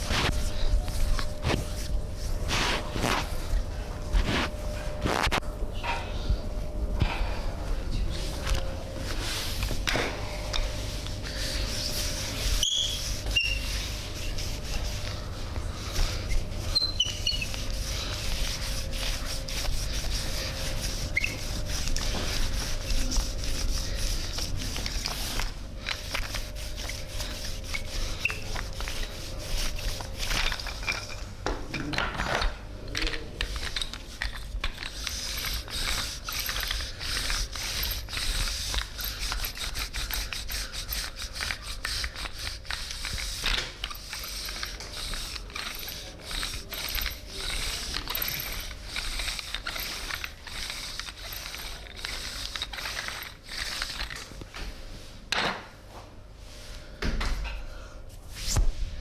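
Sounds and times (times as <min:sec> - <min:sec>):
hands rubbing skin: 0:08.1 - 0:31.2, 0:33.1 - 0:54.3.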